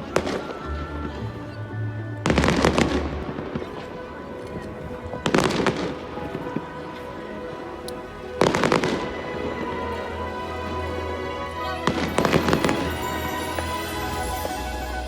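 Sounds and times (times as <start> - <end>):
music playing: 0.0 - 15.0
fireworks bursting and crackling: 11.9 - 15.0.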